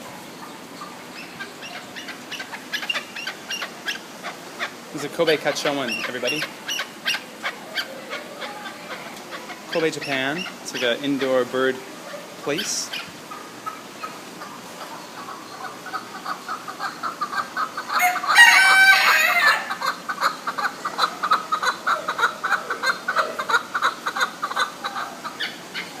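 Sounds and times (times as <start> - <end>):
chickens clucking: 0.0 - 26.0
rooster crowing: 17.9 - 19.8.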